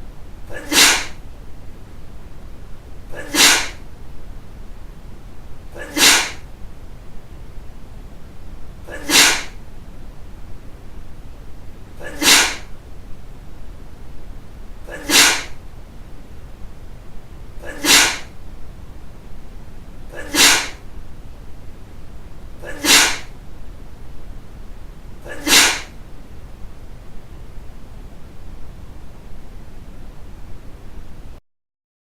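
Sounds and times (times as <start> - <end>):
person sneezing: 0.5 - 1.2, 3.1 - 3.8, 5.7 - 6.5, 8.8 - 9.6, 12.0 - 12.7, 14.8 - 15.6, 17.6 - 18.4, 20.1 - 20.9, 22.6 - 23.4, 25.2 - 26.0.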